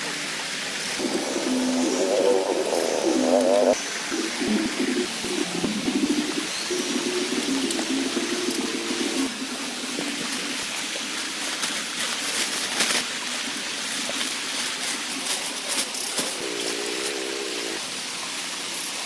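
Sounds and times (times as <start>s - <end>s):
steady rain falling: 0.0s - 18.6s
wavering tone: 1.0s - 9.3s.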